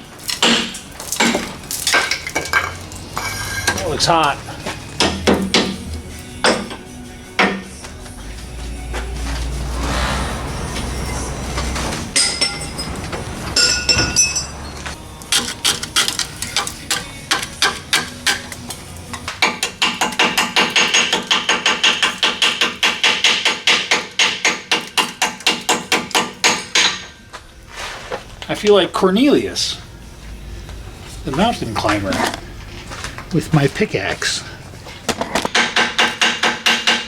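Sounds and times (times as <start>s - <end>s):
hammer chipping rust off metal: 0.2s - 4.3s, 5.0s - 6.8s, 15.3s - 27.2s, 35.4s - 37.0s
low rumble: 8.1s - 14.9s
metal clinks: 12.2s - 15.0s.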